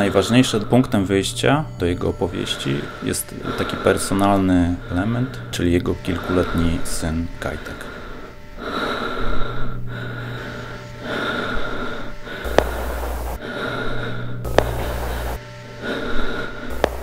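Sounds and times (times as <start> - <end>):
low hum: 0.0 - 17.0
person breathing heavily: 2.4 - 7.0, 7.6 - 17.0
sharp clicks: 12.5 - 13.4, 14.5 - 15.4, 16.7 - 17.0.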